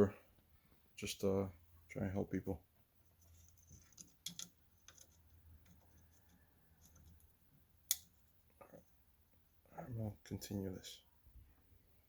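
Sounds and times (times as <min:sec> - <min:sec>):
tools and parts clicking: 0:03.3 - 0:08.2.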